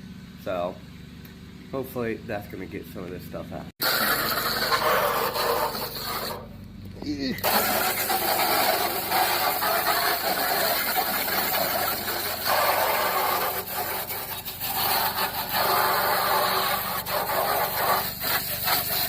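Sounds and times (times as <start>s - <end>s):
low engine-like hum: 0.0s - 8.2s
grill scrubbing rasp: 3.8s - 6.6s, 7.4s - 19.0s.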